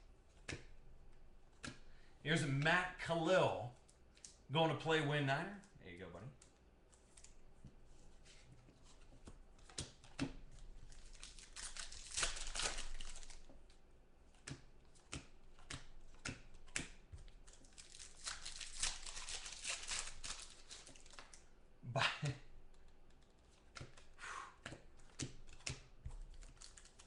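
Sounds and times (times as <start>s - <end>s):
cards clicking and rustling: 0.3s - 0.8s, 1.5s - 1.9s, 8.1s - 21.5s, 22.7s - 27.0s
card wrappers crinkling and tearing: 9.6s - 13.7s, 14.9s - 21.5s, 25.0s - 27.0s.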